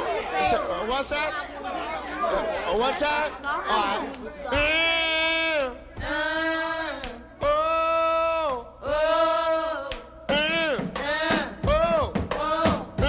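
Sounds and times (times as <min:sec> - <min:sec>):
singer's wordless vowels: 0:02.7 - 0:13.0.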